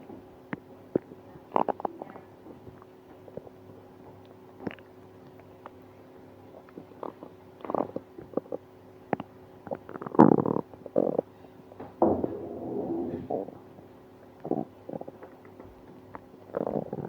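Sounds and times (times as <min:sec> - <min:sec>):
stomach gurgling: 0:00.5 - 0:05.9, 0:06.5 - 0:11.3, 0:12.0 - 0:17.0.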